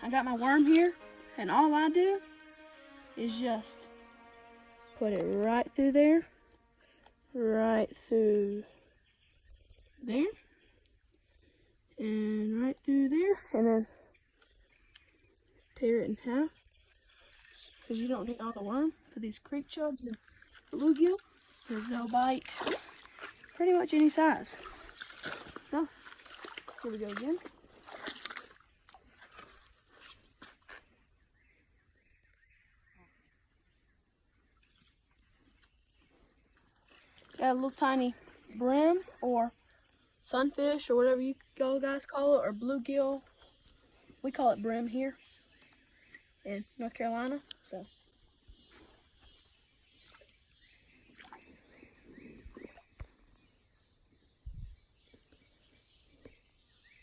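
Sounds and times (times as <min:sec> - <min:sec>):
high-pitched whine: 0:00.0 - 0:07.9
high-pitched insect drone: 0:00.0 - 0:49.6
faint creekside ambience: 0:00.0 - 0:57.0
insect chirps: 0:00.0 - 0:57.0.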